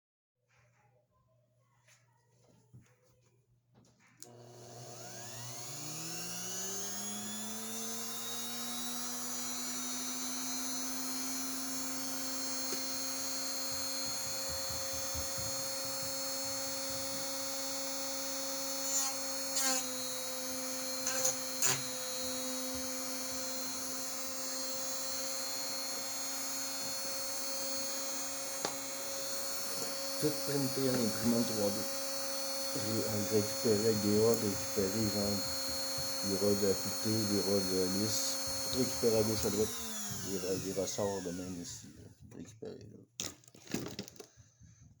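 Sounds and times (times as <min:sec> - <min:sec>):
rotary tool whining: 0:04.1 - 0:42.3
short louder tool bursts: 0:06.8 - 0:42.0.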